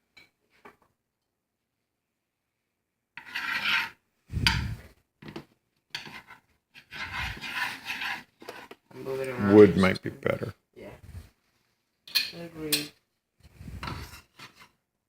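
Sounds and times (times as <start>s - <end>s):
utensil scraping frying pan: 3.2s - 4.8s, 5.9s - 9.1s, 13.7s - 14.8s.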